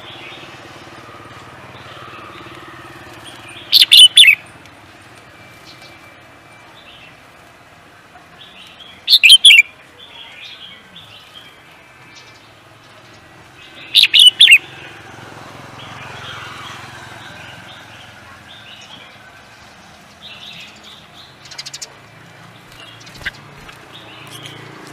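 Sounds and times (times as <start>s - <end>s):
songbird singing: 0.0s - 7.5s, 8.1s - 24.9s.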